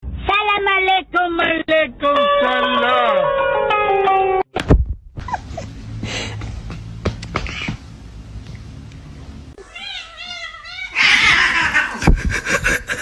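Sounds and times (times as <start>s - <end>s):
cat meowing: 9.6s - 12.0s.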